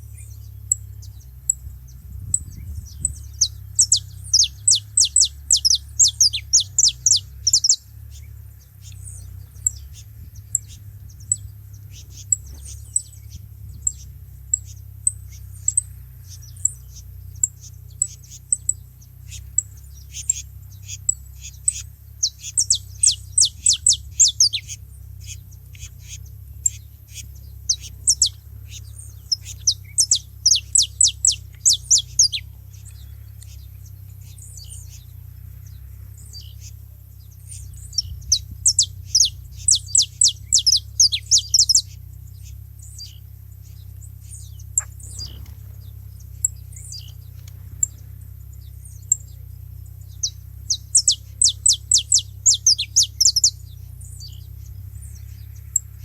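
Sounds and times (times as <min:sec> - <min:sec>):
finches chirping: 0:00.0 - 0:56.0
low steady hum: 0:00.0 - 0:56.0.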